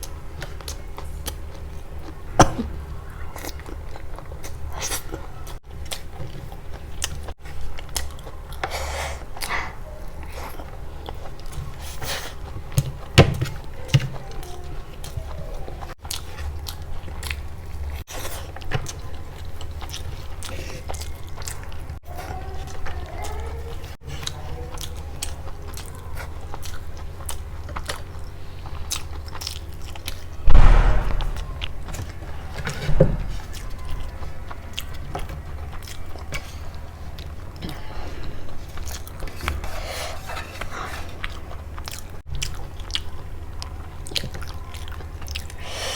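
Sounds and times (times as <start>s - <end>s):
person chewing food: 0.0s - 31.0s, 33.5s - 45.9s
louder noisy bursts: 30.5s - 31.7s.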